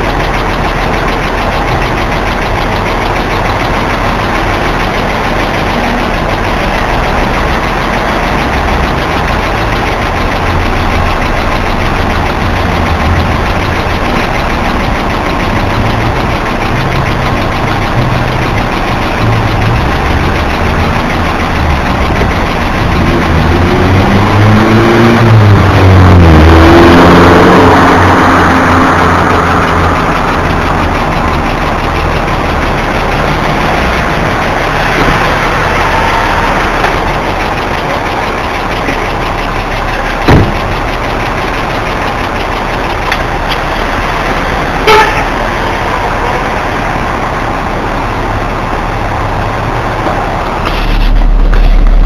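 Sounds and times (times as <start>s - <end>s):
car engine idling: 0.0s - 52.0s
loud low rumble: 0.0s - 52.0s
sharp knock: 40.2s - 40.7s
short horn-like toot: 44.8s - 45.3s.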